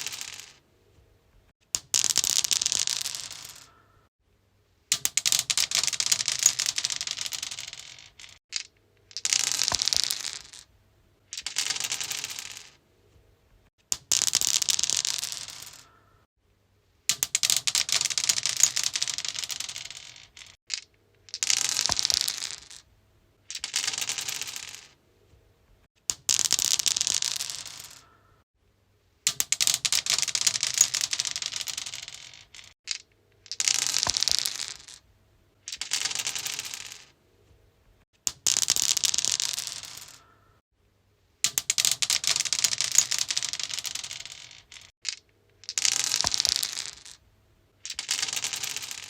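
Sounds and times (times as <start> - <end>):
dice clattering on stone: 0.0 - 0.6, 1.7 - 3.7, 4.9 - 10.7, 11.3 - 12.8, 13.9 - 15.9, 17.1 - 22.9, 23.5 - 25.0, 26.1 - 28.1, 29.3 - 35.0, 35.6 - 37.2, 38.2 - 40.2, 41.4 - 47.2, 47.8 - 49.0.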